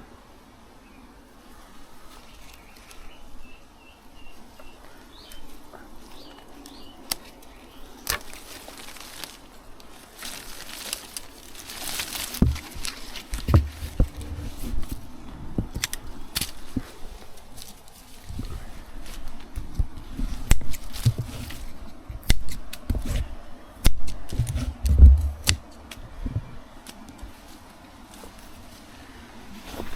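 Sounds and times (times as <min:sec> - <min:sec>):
rustling foliage: 0:00.0 - 0:29.9
garden scissors snipping: 0:05.3 - 0:15.0, 0:15.6 - 0:18.4, 0:19.0 - 0:26.0
low thumps: 0:12.4 - 0:15.8, 0:24.3 - 0:26.6.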